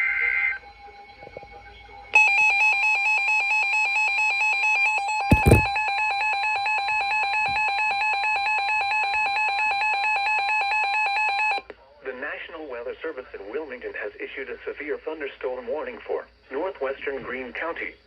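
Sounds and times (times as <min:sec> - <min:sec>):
electronic alarm tone: 0:00.0 - 0:11.6
short knock: 0:05.3 - 0:05.8.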